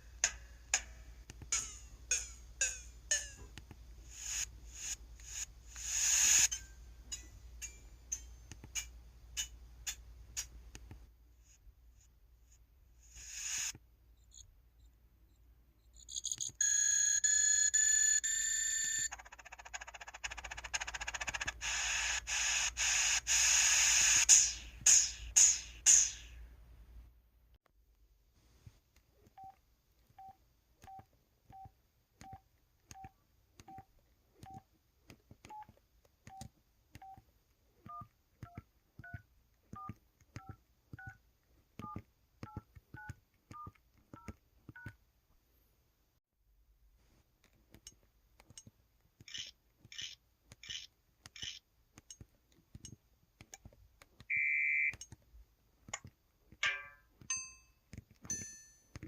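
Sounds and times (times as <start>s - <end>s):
drum-like key tones: 0.2s - 3.6s
short key beeps: 54.3s - 55.0s.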